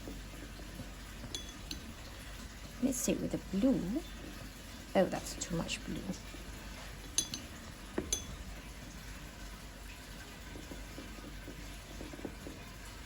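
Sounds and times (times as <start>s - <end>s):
paintbrush clinking on jar: 1.2s - 2.2s, 5.8s - 8.8s.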